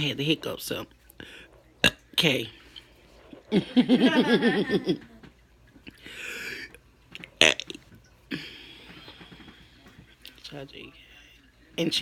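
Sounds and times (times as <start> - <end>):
woman burping: 7.4 - 8.5.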